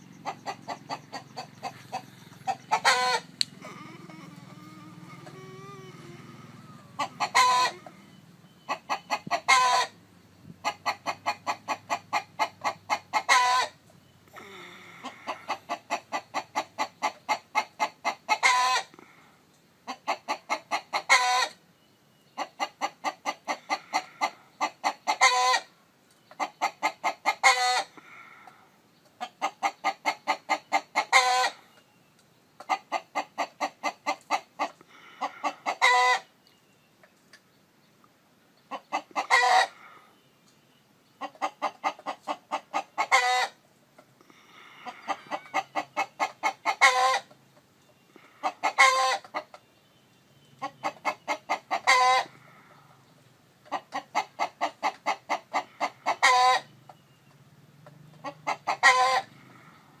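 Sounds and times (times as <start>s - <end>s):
chicken clucking: 0.0s - 10.0s, 10.6s - 19.0s, 19.8s - 28.1s, 29.0s - 32.0s, 32.6s - 37.5s, 38.6s - 60.0s
chicken squawking: 0.2s - 8.0s, 8.7s - 10.0s, 12.1s - 13.7s, 18.0s - 18.8s, 23.5s - 25.7s, 26.8s - 27.9s, 29.4s - 31.6s, 32.7s - 36.2s, 38.7s - 39.8s, 41.2s - 43.6s, 44.8s - 47.3s, 48.4s - 49.4s, 50.6s - 52.4s, 53.7s - 56.7s, 58.2s - 59.3s.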